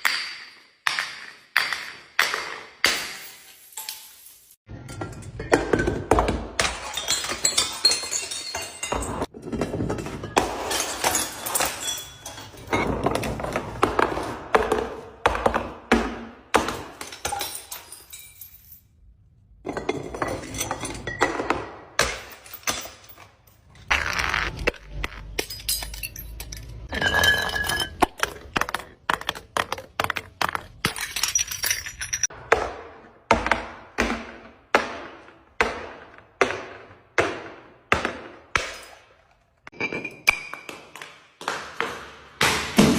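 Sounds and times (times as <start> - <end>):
glass bottles breaking: 0.0 - 13.4, 16.6 - 19.0, 19.6 - 32.4.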